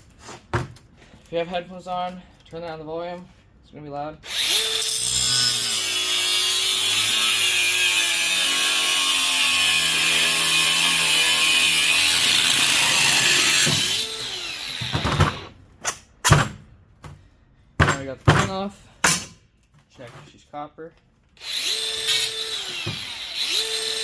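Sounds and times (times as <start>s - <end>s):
angle grinder cutting metal: 4.3s - 15.5s, 21.4s - 24.0s.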